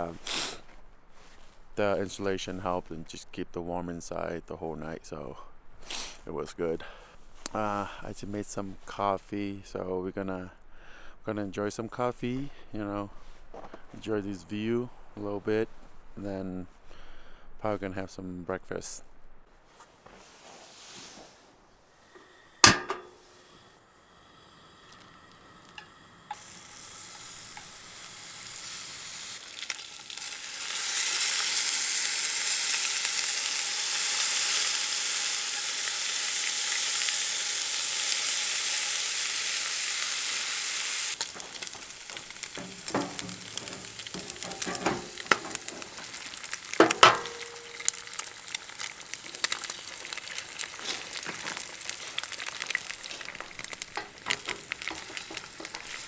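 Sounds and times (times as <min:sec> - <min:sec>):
meat and eggs sizzling in a pan: 0:22.2 - 0:56.0
utensils knocking against pan: 0:22.6 - 0:23.2, 0:41.2 - 0:48.0, 0:53.3 - 0:56.0.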